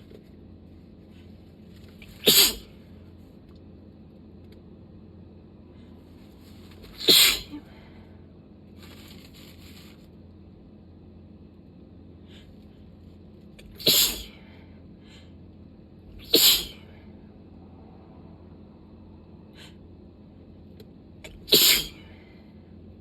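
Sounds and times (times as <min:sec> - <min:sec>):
person sneezing: 0:02.0 - 0:02.8, 0:07.0 - 0:07.8, 0:13.6 - 0:14.4, 0:16.2 - 0:16.9, 0:21.3 - 0:22.1.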